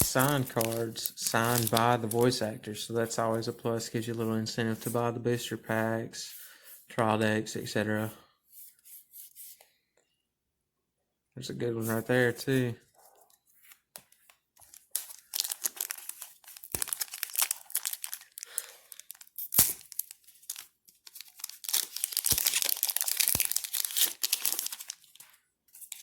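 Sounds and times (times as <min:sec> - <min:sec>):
wrapper tearing and crinkling: 0:00.0 - 0:02.4, 0:14.6 - 0:26.0.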